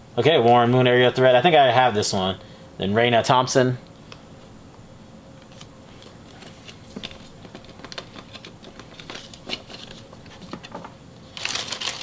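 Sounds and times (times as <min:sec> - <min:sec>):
trading cards clicking and rustling: 0:05.4 - 0:12.0.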